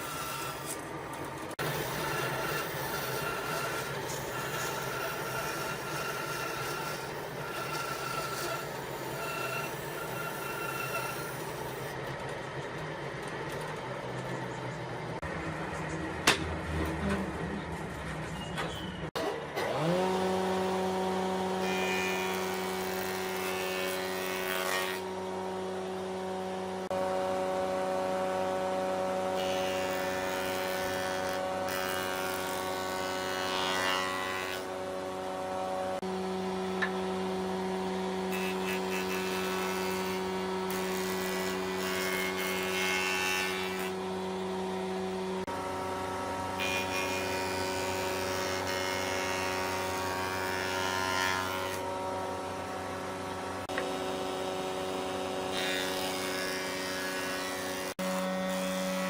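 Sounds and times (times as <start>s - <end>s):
electric power tool running: 1.5s - 12.0s, 19.2s - 59.0s.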